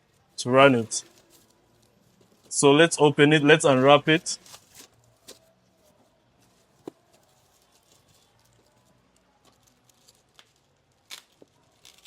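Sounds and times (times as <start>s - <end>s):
packaging rustling: 0.0s - 2.5s, 4.0s - 12.0s.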